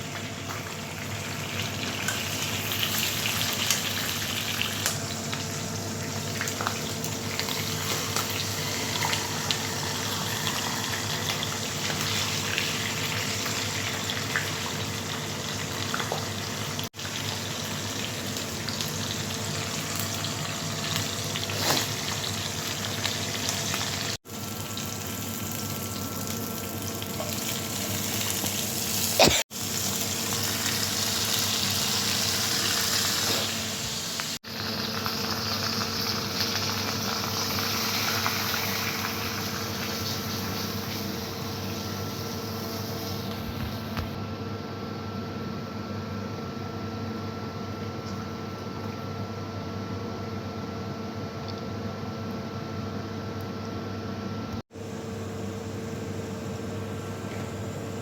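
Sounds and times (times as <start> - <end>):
food sizzling in hot oil: 0.0 - 43.3.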